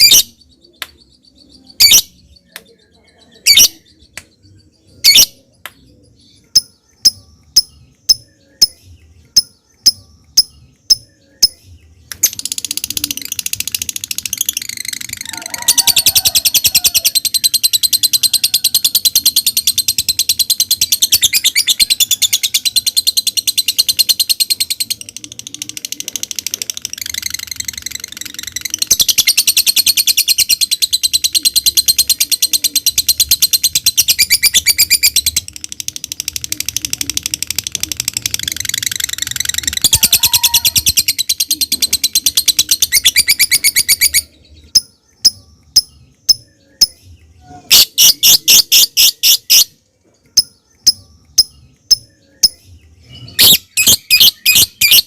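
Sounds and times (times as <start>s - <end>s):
lovebird rapid chattering trill: 6.5s - 8.8s, 12.2s - 47.0s, 47.7s - 49.8s, 53.4s - 55.0s.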